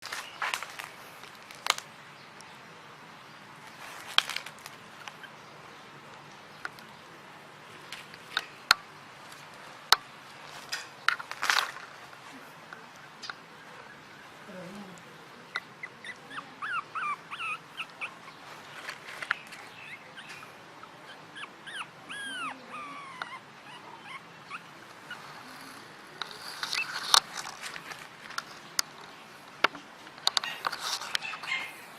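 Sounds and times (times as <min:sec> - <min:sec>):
puppy whimpering: 0:13.8 - 0:18.7, 0:19.5 - 0:27.0.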